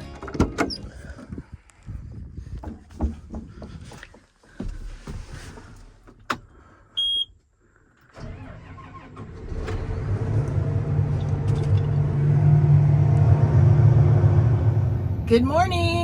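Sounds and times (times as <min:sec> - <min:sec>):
diesel engine starting and running: 0:00.0 - 0:01.4, 0:08.0 - 0:16.0
short electronic beep: 0:07.0 - 0:07.3.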